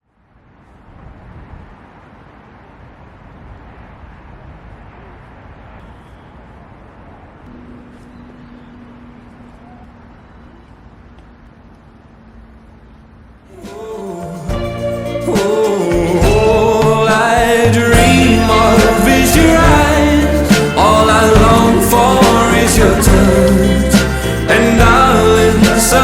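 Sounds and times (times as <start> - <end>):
steady low hum: 0.0 - 15.0
outdoor background rumble: 0.0 - 15.2.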